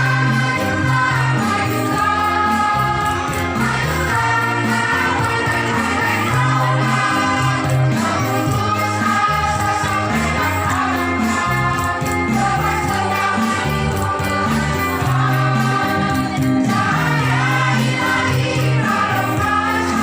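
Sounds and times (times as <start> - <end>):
choir singing: 0.0 - 20.0.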